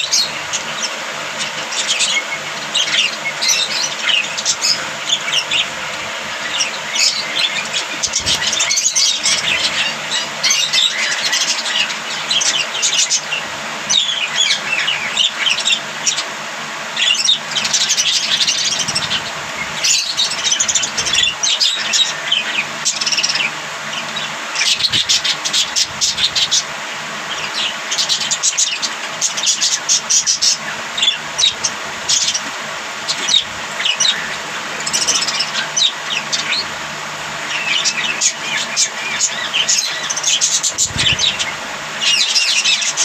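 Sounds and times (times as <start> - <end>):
budgerigars chattering: 0.0 - 43.0
steady low hum: 0.0 - 43.0.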